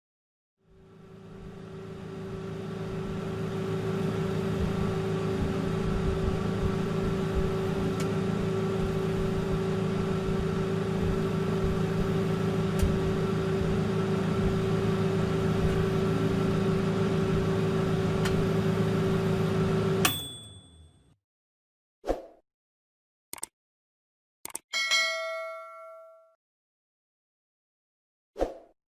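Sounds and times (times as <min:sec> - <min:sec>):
microwave oven humming: 0:00.6 - 0:21.2.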